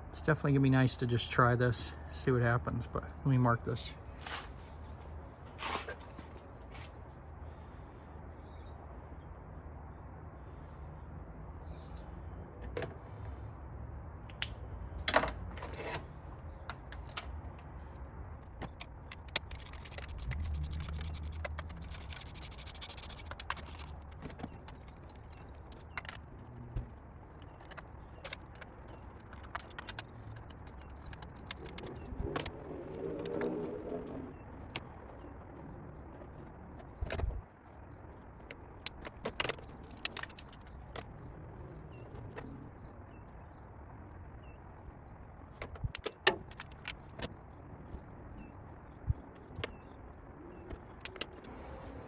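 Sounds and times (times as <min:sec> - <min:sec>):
rapid clicking and scraping: 0:18.4 - 0:33.6, 0:38.3 - 0:41.2.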